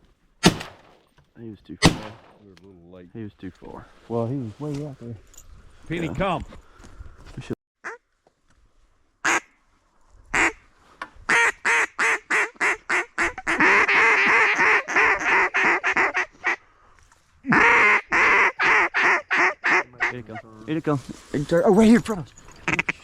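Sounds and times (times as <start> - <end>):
duck call quacking notes: 9.2 - 9.5, 10.4 - 10.6, 11.3 - 16.6, 17.5 - 20.4, 22.7 - 23.0.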